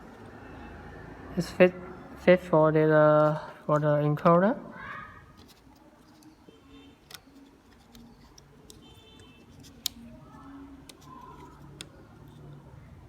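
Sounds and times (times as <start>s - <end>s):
plastic parts clicking: 5.4s - 6.4s, 7.0s - 12.6s.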